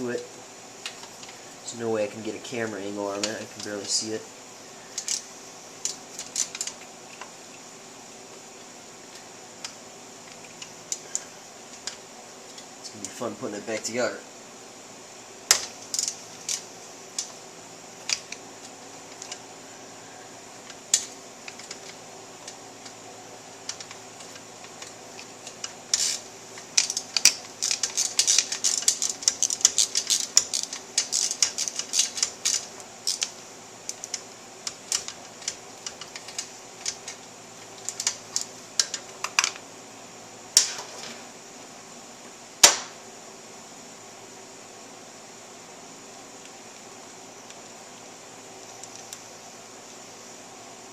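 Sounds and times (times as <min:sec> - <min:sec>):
socket ratchet clicking: 0:23.7 - 0:37.2.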